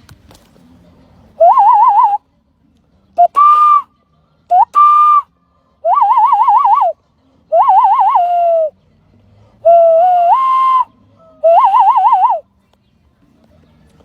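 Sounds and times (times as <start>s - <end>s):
loud warbling whistled calls: 1.4s - 2.2s, 4.5s - 8.7s, 9.6s - 12.4s.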